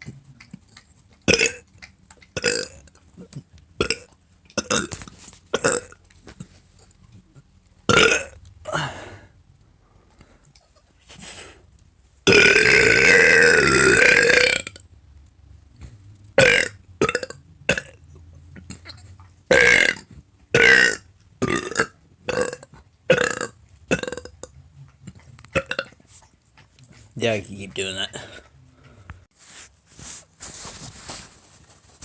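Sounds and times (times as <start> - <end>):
person burping: 1.3 - 1.6, 2.4 - 2.8, 3.8 - 4.9, 5.5 - 6.0, 7.9 - 9.3, 12.2 - 14.8, 16.4 - 18.0, 19.5 - 24.5, 25.6 - 25.9.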